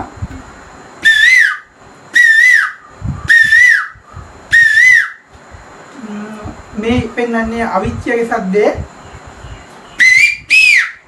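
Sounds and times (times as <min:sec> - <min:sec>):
man whistling bird call: 0:01.0 - 0:05.3, 0:09.9 - 0:11.0.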